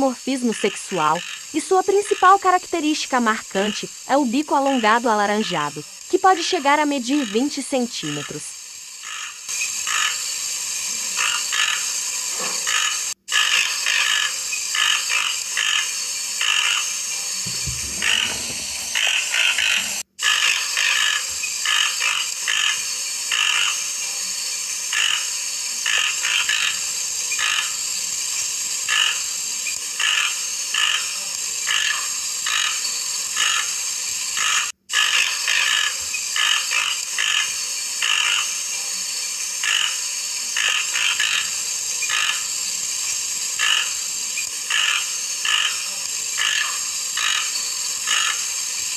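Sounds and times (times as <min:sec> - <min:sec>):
steady high hiss: 0:00.0 - 0:20.0, 0:35.3 - 0:48.9.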